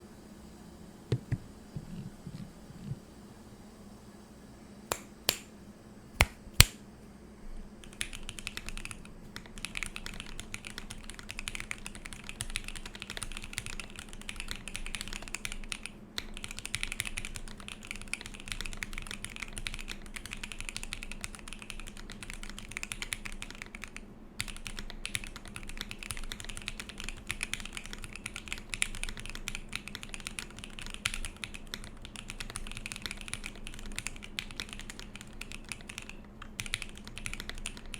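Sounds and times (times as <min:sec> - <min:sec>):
loud keyboard clicks: 0:07.8 - 0:37.9
mechanical keyboard typing: 0:07.8 - 0:37.9.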